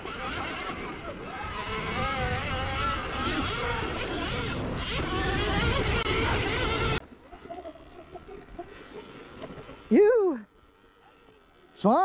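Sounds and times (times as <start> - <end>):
wind noise on microphone: 0.0 - 7.0
electric motor whining: 0.0 - 11.8.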